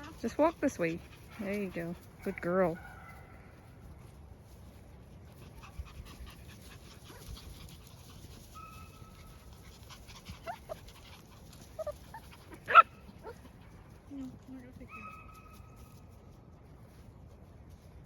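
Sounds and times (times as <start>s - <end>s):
puppies whimpering: 11.6s - 13.4s
puppy yelp: 11.8s - 13.4s.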